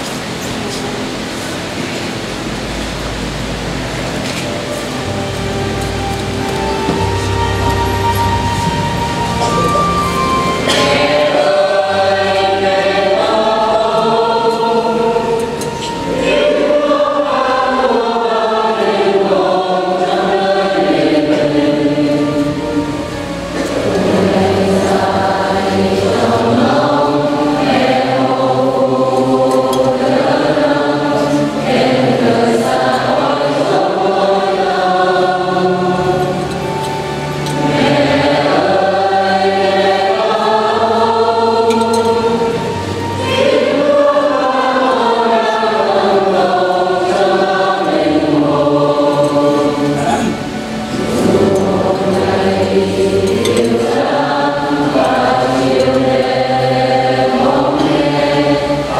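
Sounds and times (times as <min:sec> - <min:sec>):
choir singing a hymn: 0:00.0 - 0:58.9.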